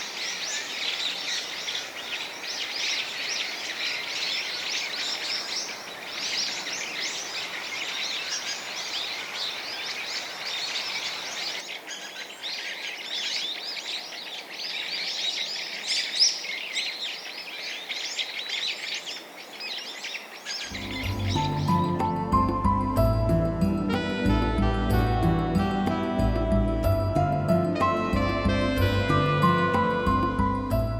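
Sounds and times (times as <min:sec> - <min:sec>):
many birds chirping: 0:00.0 - 0:22.6
music: 0:20.7 - 0:30.9.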